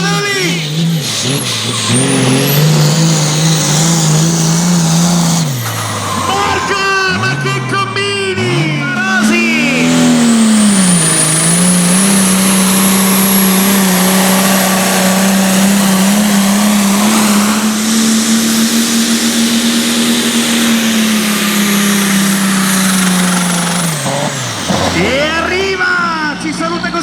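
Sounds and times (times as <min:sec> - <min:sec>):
tractor engine under load: 0:00.0 - 0:27.0
high whine: 0:01.4 - 0:26.2.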